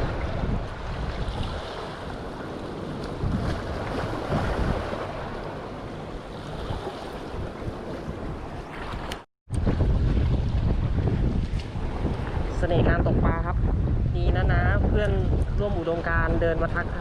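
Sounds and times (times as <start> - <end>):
surf washing onto beach: 0.0 - 12.6
wind rumbling on microphone: 0.0 - 17.0.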